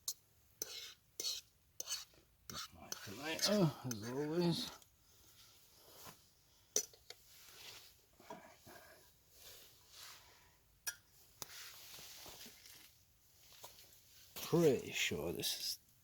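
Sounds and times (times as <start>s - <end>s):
soft rustling and scraping: 4.4s - 10.5s, 11.2s - 15.1s.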